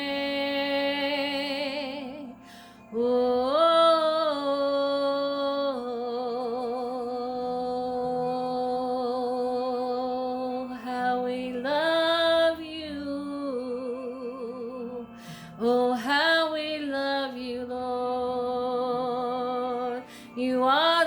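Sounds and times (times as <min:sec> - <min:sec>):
breath: 0:02.4 - 0:02.9, 0:15.1 - 0:15.6, 0:20.0 - 0:20.4.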